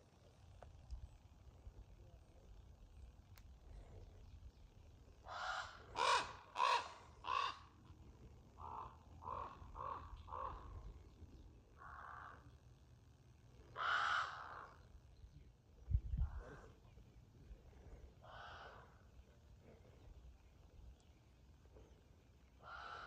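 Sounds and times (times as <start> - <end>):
crow cawing: 5.2 - 7.7, 8.6 - 10.8, 11.8 - 12.5, 13.7 - 14.8, 18.2 - 19.0, 22.6 - 23.0.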